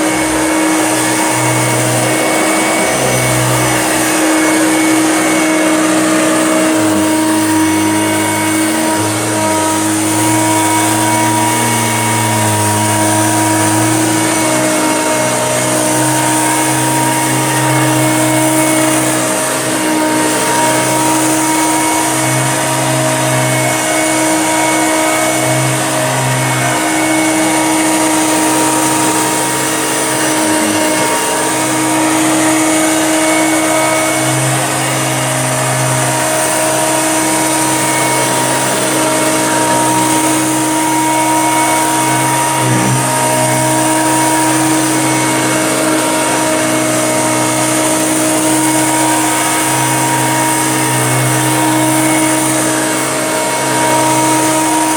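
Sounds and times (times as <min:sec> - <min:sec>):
vacuum cleaner motor whine: 0:00.0 - 0:54.9.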